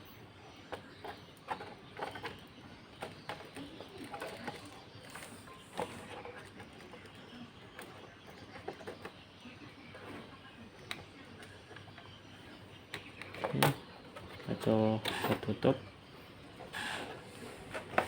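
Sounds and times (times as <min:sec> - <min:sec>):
plastic parts clicking: 0:00.7 - 0:09.3.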